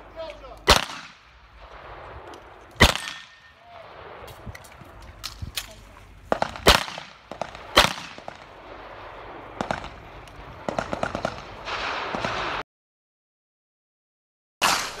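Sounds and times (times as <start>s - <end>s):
pistol gunshots: 0.6s - 4.5s, 5.2s - 12.6s, 14.6s - 15.0s.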